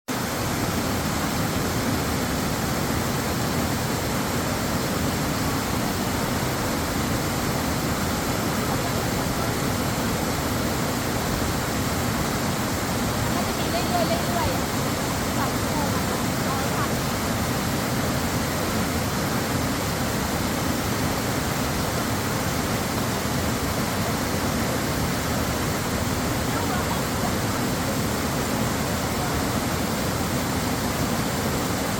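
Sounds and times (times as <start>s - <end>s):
waterfall rushing: 0.1s - 31.9s.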